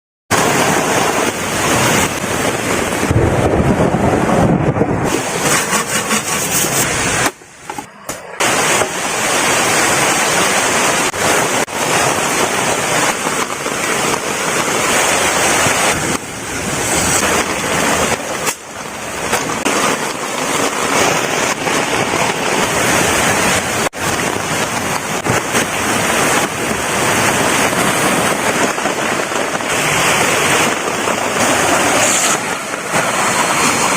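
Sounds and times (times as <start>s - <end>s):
heavy rain pouring: 0.3s - 33.9s
wind noise on microphone: 0.3s - 33.9s.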